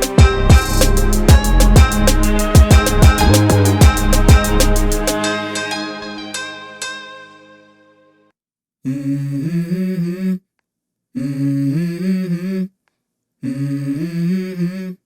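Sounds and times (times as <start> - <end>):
person humming wordless phrases: 8.8 - 10.4, 11.2 - 12.7, 13.4 - 15.0.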